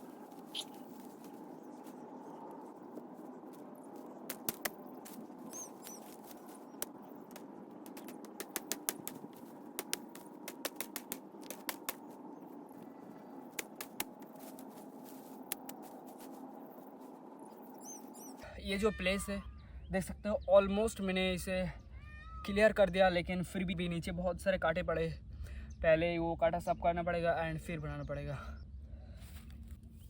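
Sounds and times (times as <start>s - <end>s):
axe cracking branches: 4.3s - 12.1s, 13.6s - 14.8s.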